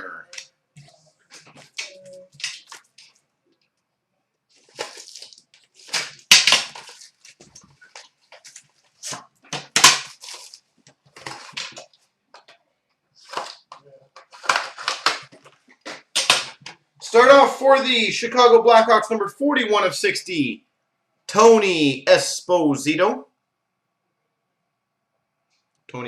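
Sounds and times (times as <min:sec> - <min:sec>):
packaging tearing and crinkling: 0:01.3 - 0:03.1, 0:04.5 - 0:12.0, 0:13.2 - 0:16.8.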